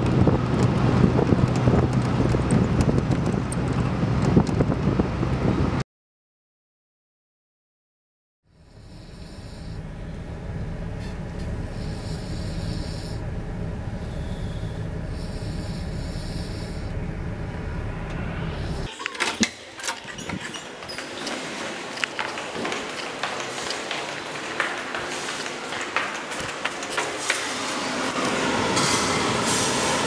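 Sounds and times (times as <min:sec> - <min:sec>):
sharp clicks and knocks: 0:00.0 - 0:04.7, 0:19.0 - 0:28.9
low engine rumble: 0:00.0 - 0:05.8, 0:08.5 - 0:18.9.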